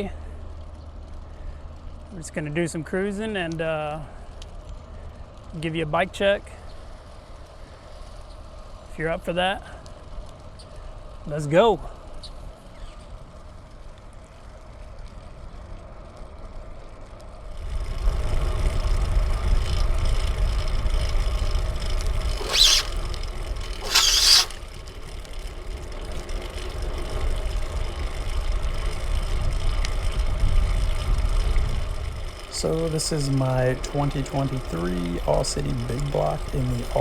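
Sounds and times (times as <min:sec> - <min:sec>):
bicycle riding rumble: 0:00.0 - 0:11.2, 0:11.9 - 0:37.0
short high-pitched sounds: 0:22.4 - 0:23.0, 0:23.8 - 0:24.6.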